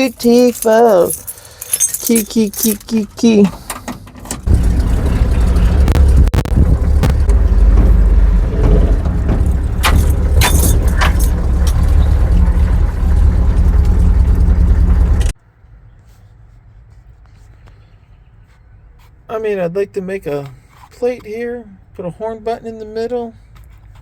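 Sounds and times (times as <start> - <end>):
vehicle engine rumbling: 0.0 - 15.4.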